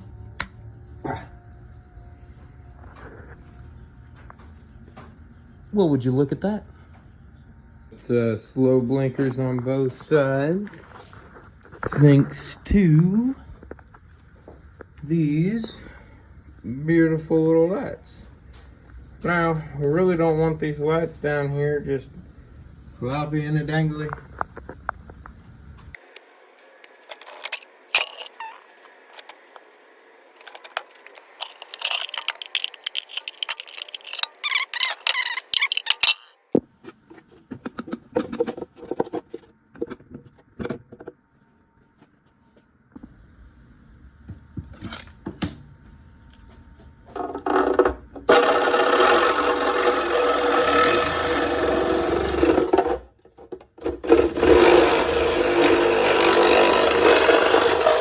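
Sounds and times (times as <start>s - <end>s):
small parts clicking and rattling: 27.1s - 28.4s, 30.4s - 36.3s.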